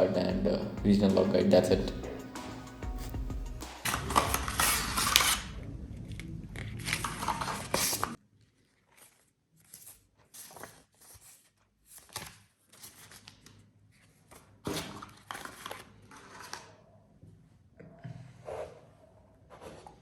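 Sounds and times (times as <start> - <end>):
paper and cardboard rustling: 3.0 - 5.5, 6.6 - 16.8.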